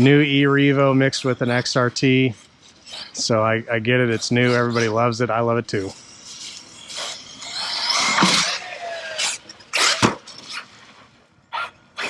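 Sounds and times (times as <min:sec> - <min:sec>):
toy truck motor whine: 0:05.9 - 0:10.6.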